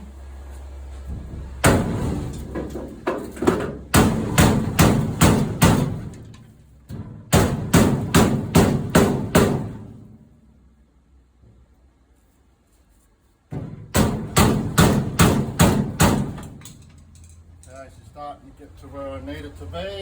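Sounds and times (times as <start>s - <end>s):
hammer striking sheet steel: 1.6s - 10.2s, 13.5s - 16.9s.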